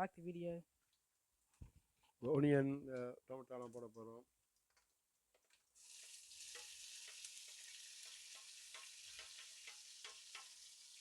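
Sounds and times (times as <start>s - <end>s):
vegetables sizzling in hot oil: 5.8s - 11.0s
spatula scraping a pan: 6.0s - 10.8s.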